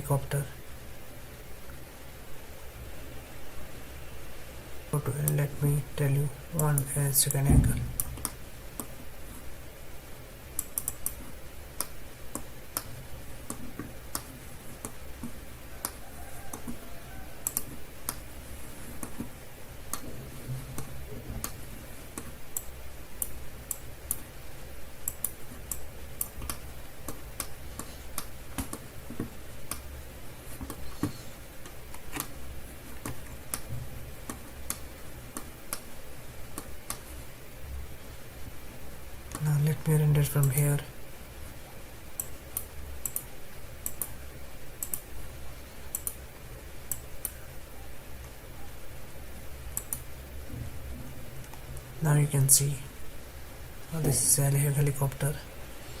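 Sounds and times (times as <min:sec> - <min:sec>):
low steady hum: 0:00.0 - 0:56.0
mouse buttons clicking: 0:17.4 - 0:18.2.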